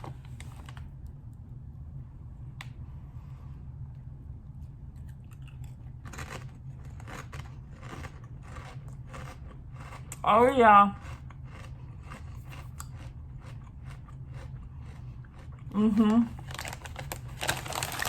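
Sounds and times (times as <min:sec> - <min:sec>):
low hum: 0:00.0 - 0:18.0
person crunching potato chips: 0:05.0 - 0:10.2, 0:11.0 - 0:18.0.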